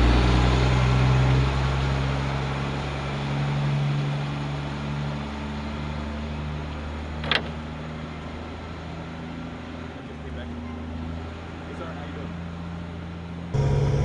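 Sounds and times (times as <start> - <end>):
vehicle engine running: 11.2 - 14.0.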